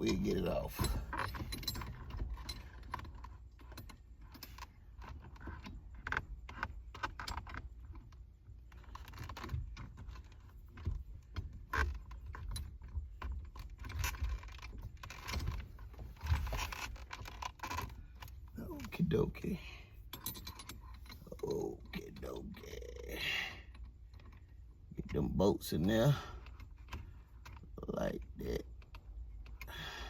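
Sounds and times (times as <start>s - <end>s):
metallic clinks of bolts: 0.0s - 4.7s, 20.0s - 22.2s.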